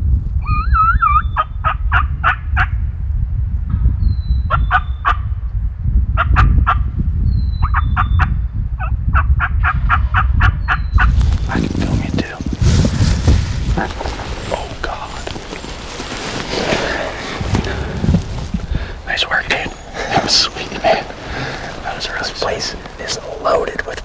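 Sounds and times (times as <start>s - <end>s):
wind rumble on microphone: 0.0s - 24.0s
wild turkeys calling: 13.4s - 24.0s.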